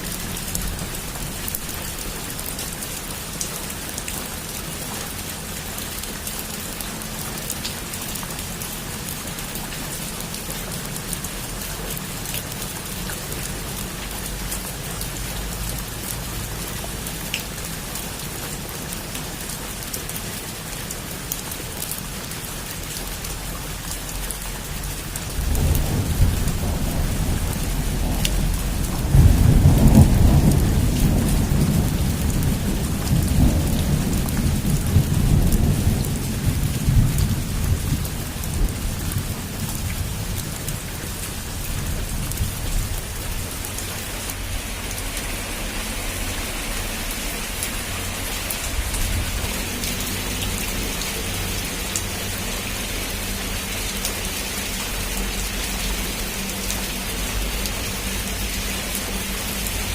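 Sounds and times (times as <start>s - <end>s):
heavy rain on a roof: 0.0s - 59.9s
rumble of thunder: 25.2s - 43.7s, 47.8s - 51.6s.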